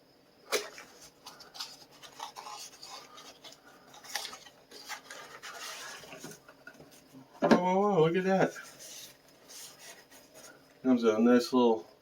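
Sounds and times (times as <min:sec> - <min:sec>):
packaging rubbing and scraping: 0:00.5 - 0:07.1, 0:08.3 - 0:10.6.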